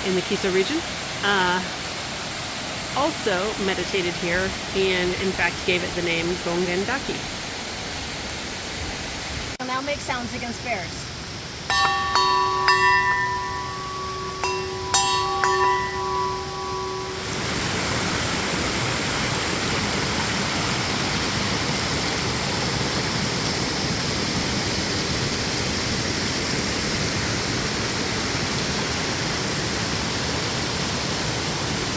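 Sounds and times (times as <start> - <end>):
waterfall rushing: 0.0 - 31.9
bell ringing: 11.7 - 17.8.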